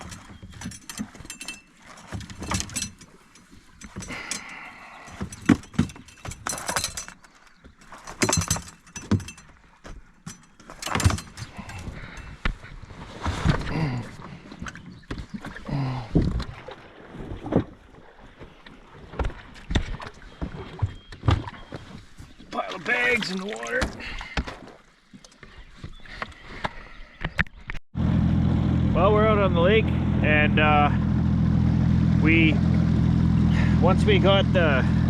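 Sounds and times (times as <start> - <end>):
gear knocking and rattling: 0.0 - 9.6, 10.2 - 12.5.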